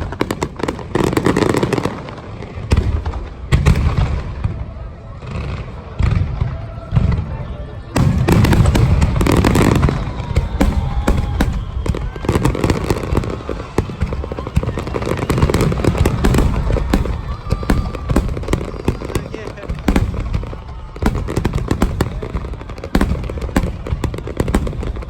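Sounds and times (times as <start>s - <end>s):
fireworks crackling: 0.0s - 7.1s, 7.8s - 25.0s
fireworks booming: 0.0s - 25.0s.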